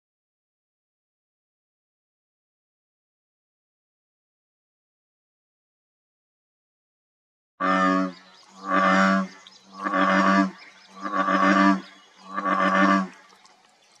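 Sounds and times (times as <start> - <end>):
frog croaking: 7.6 - 13.3.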